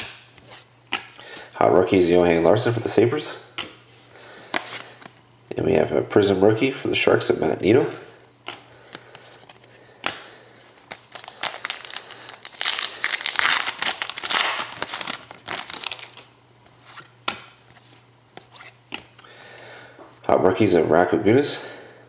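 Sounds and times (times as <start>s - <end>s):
card pack wrapper tearing: 10.8s - 16.3s
wrapper crinkling: 10.8s - 16.3s.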